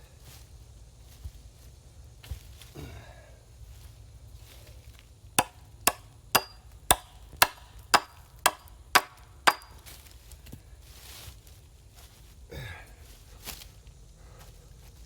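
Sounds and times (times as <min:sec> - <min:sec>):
sharp blows of a hand tool: 0:05.4 - 0:09.8.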